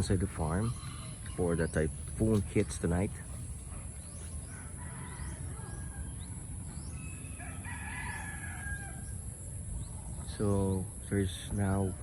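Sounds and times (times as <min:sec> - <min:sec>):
steady low rumble: 0:01.8 - 0:07.4
rooster crowing: 0:04.4 - 0:09.3.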